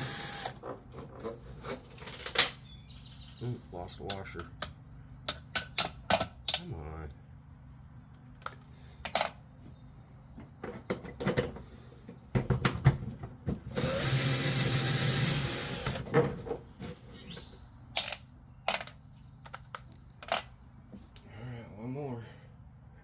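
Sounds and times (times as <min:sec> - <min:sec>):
power drill running: 0:00.0 - 0:00.6, 0:13.7 - 0:16.1
metal clicks of tools: 0:18.0 - 0:20.5.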